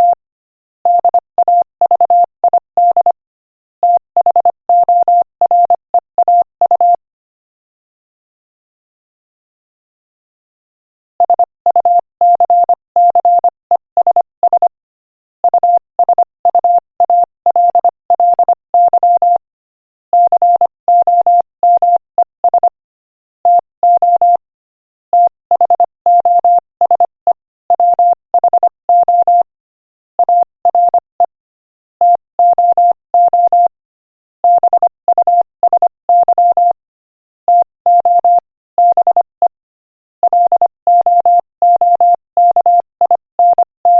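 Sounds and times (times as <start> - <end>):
morse code beeps: 0.0 - 0.2, 0.9 - 3.2, 3.8 - 7.0, 11.2 - 14.7, 15.4 - 19.4, 20.2 - 22.8, 23.5 - 24.4, 25.2 - 29.5, 30.2 - 31.4, 32.0 - 33.8, 34.4 - 36.8, 37.5 - 39.6, 40.2 - 43.9.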